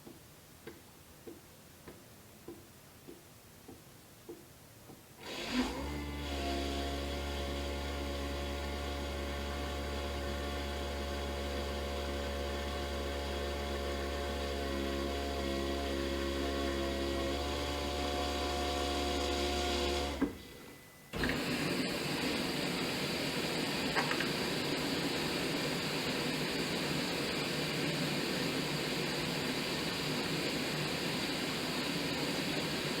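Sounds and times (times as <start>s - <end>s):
dishwasher motor hum: 5.6s - 33.0s
dishwasher rushing wash noise: 21.2s - 33.0s.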